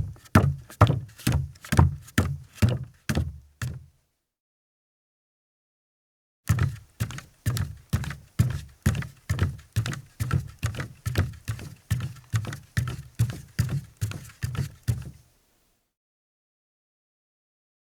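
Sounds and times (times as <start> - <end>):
bare footsteps on deck: 0.0 - 3.9, 6.5 - 15.2.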